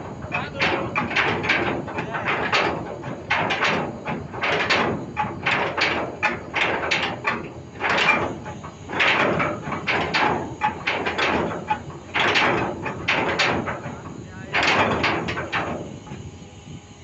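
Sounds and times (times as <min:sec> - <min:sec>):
anchor chain clanking and rattling: 0:00.0 - 0:16.3.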